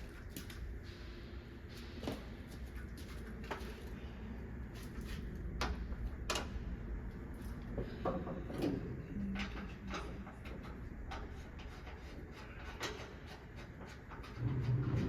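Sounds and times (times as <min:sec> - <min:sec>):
metallic clatter: 0:14.1 - 0:15.0.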